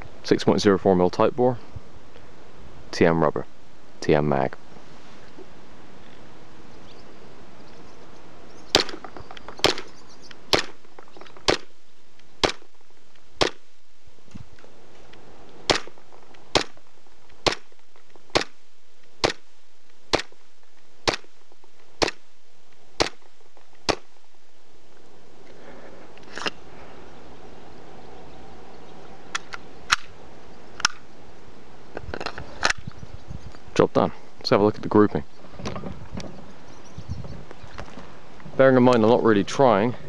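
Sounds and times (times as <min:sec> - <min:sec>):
airsoft pistol shots: 0:08.7 - 0:09.9, 0:10.5 - 0:10.8, 0:11.4 - 0:11.7, 0:12.4 - 0:12.7, 0:13.4 - 0:13.6, 0:15.7 - 0:16.8, 0:17.4 - 0:17.7, 0:18.3 - 0:18.6, 0:19.2 - 0:19.5, 0:20.1 - 0:20.4, 0:21.0 - 0:21.3, 0:22.0 - 0:22.2, 0:23.0 - 0:23.2, 0:23.8 - 0:24.1.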